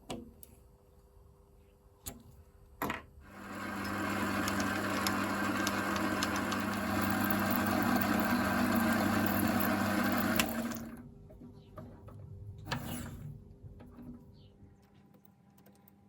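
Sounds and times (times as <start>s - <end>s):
lathe motor humming: 3.3s - 11.0s.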